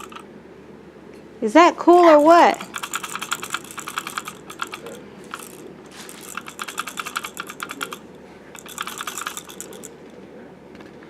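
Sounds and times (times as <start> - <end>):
toy car wheels rattling: 0.0 - 0.2, 2.0 - 10.1.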